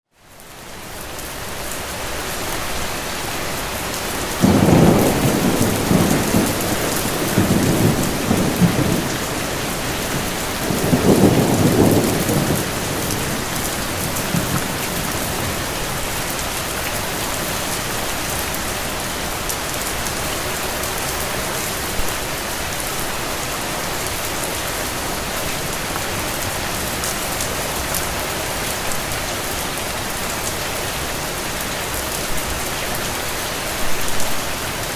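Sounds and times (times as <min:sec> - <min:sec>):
steady rain falling: 0:00.1 - 0:34.9
rolling thunder: 0:04.3 - 0:16.6.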